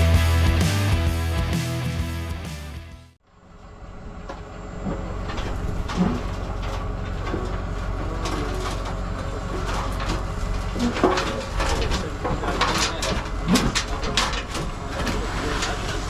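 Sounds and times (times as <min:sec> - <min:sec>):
machine engine humming: 0:00.0 - 0:03.1.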